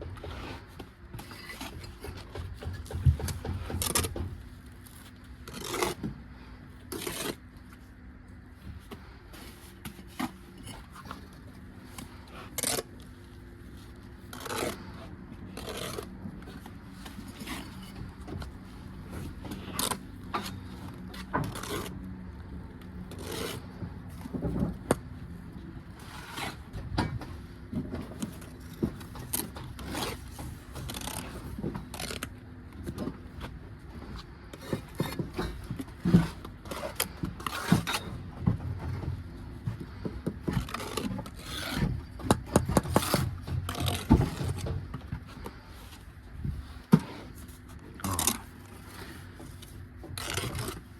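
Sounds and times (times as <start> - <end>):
trowel scraping mortar: 5.4 - 6.1, 6.9 - 7.5, 14.3 - 16.2, 23.1 - 23.8, 26.0 - 26.7, 29.4 - 32.2, 34.6 - 38.1.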